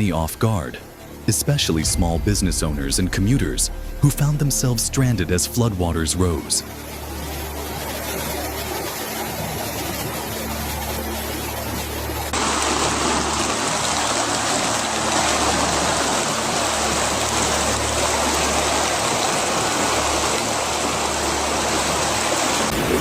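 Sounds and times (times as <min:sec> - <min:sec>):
rushing floodwater: 0:00.0 - 0:23.0
low hum: 0:00.9 - 0:08.8.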